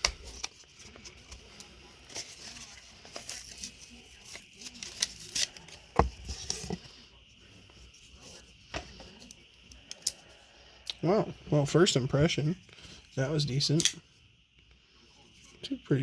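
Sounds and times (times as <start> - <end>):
packaging crinkling and rustling: 0.0 - 6.8.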